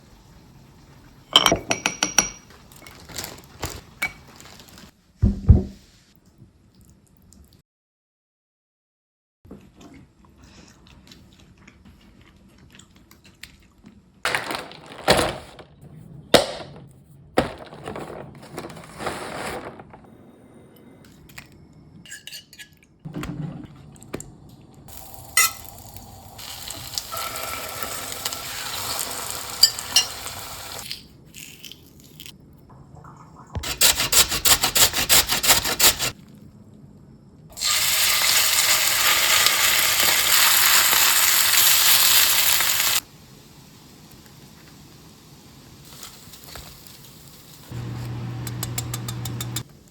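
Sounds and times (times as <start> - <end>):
dishes and utensils clinking: 1.3 - 3.2, 22.0 - 22.9, 25.3 - 25.7, 29.6 - 30.3, 47.8 - 49.7
food sizzling in a pan: 24.9 - 30.9, 37.6 - 49.6.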